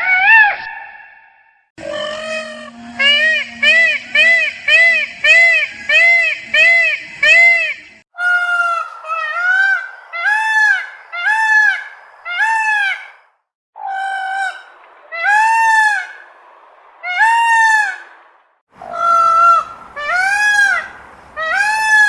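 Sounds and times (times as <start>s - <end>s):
peacock honking calls: 1.8s - 13.1s, 18.8s - 22.0s.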